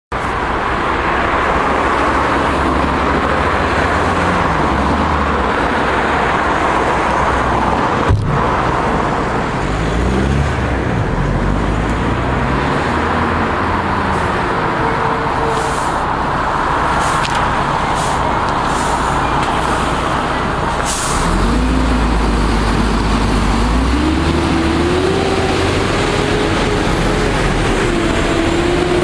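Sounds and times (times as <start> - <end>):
tyre and road noise: 0.1 - 29.0
car engine hum: 0.3 - 29.0.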